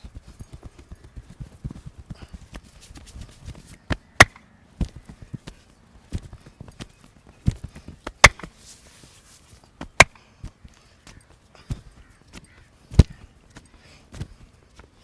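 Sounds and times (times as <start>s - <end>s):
percussive massage strikes: 3.8s - 5.1s, 8.0s - 8.6s, 9.8s - 10.2s.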